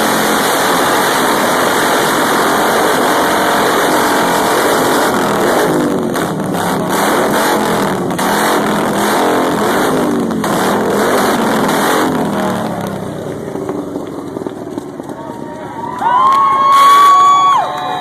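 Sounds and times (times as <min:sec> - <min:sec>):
vehicle engines revving: 0:00.0 - 0:18.0.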